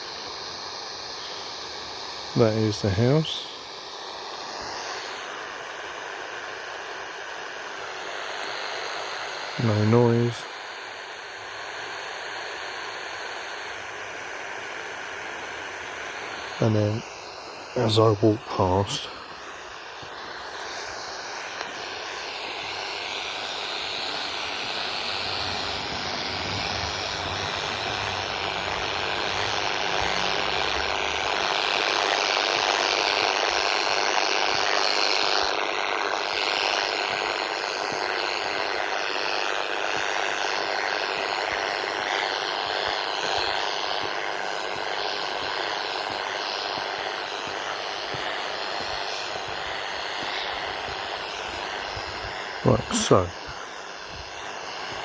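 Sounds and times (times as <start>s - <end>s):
radio static hissing and buzzing: 0.0s - 55.0s.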